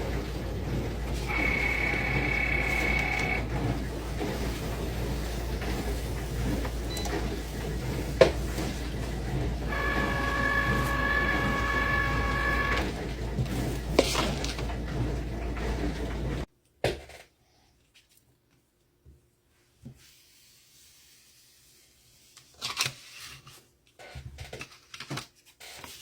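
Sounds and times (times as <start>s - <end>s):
motor whine: 0.0s - 14.5s
cutting machine whirring: 0.0s - 16.5s.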